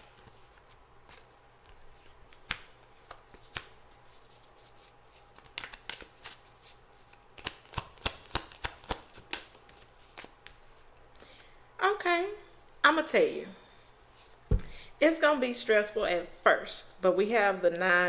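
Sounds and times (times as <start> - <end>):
cards being shuffled: 0.0 - 10.8.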